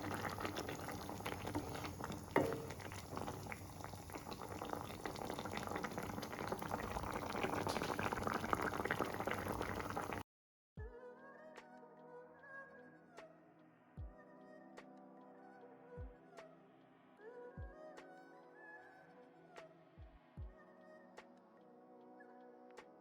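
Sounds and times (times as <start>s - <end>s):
gravy bubbling in a pan: 0.0s - 10.2s.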